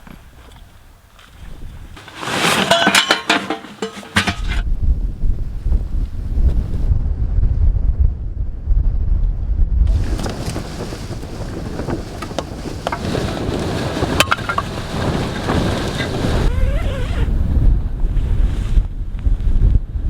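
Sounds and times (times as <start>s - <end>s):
wind buffeting microphone: 0.0s - 2.0s, 2.7s - 20.0s
rustling with clicks: 2.0s - 4.6s, 9.9s - 17.2s.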